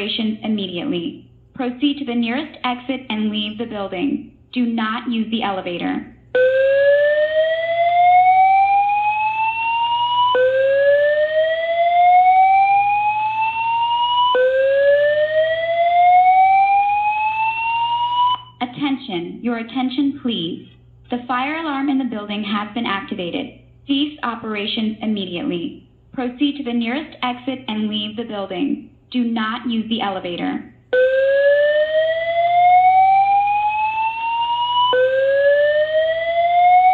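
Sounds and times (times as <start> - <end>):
fire alarm whoop tone: 6.4 - 18.6, 30.9 - 36.9.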